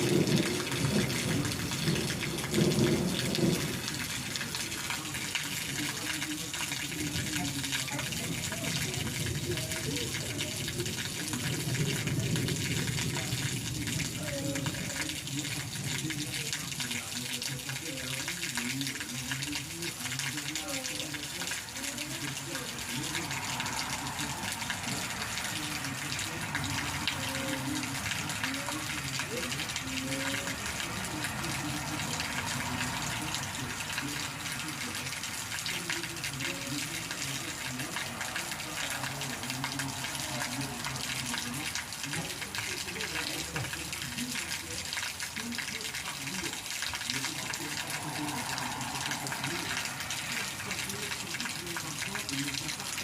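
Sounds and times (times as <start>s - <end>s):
steady rain patter: 0.0s - 53.0s.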